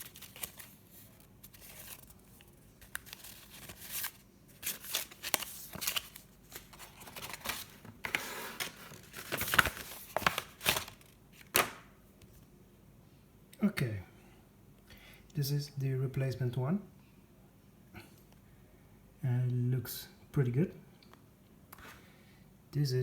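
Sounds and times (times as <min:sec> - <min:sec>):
packaging rustling and crinkling: 0:00.0 - 0:11.8.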